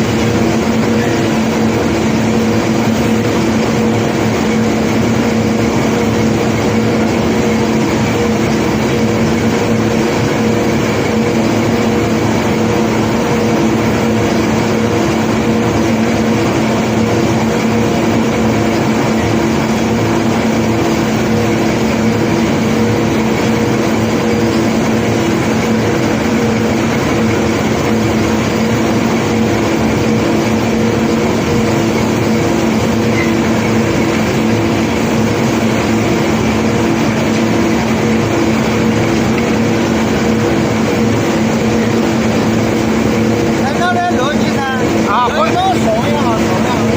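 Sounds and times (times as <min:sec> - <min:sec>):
machinery droning: 0:00.0 - 0:46.9.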